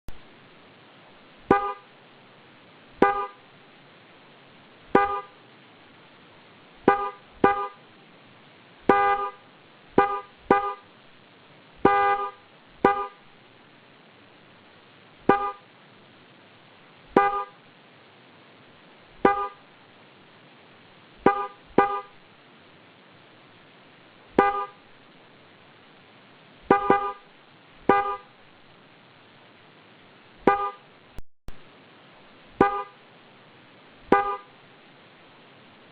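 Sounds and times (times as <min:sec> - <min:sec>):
car horn honking: 0:01.5 - 0:01.9, 0:03.0 - 0:03.4, 0:05.0 - 0:05.4, 0:06.9 - 0:07.8, 0:08.9 - 0:09.4, 0:10.0 - 0:10.8, 0:11.8 - 0:13.2, 0:15.3 - 0:15.6, 0:17.2 - 0:17.6, 0:19.2 - 0:19.6, 0:21.2 - 0:22.2, 0:24.4 - 0:24.8, 0:26.7 - 0:27.3, 0:27.9 - 0:28.3, 0:30.5 - 0:30.8, 0:32.6 - 0:33.0, 0:34.1 - 0:34.5.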